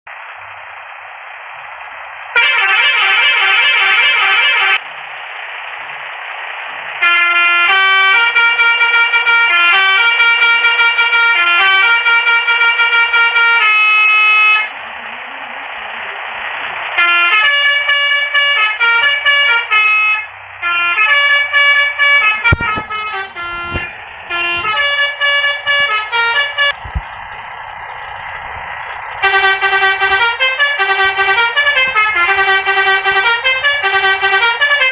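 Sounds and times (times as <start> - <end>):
musical air horn: 2.3 - 4.8, 7.0 - 14.7, 17.0 - 34.9
steady hiss: 20.2 - 34.9.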